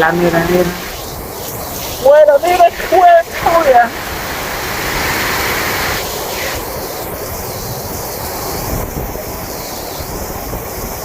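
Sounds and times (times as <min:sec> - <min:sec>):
heavy rain pouring: 0:00.0 - 0:11.0
wind buffeting microphone: 0:00.0 - 0:11.0.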